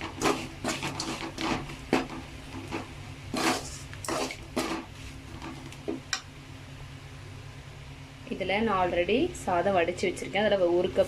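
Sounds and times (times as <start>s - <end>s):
spoon stirring and scraping pan: 0.0s - 5.9s.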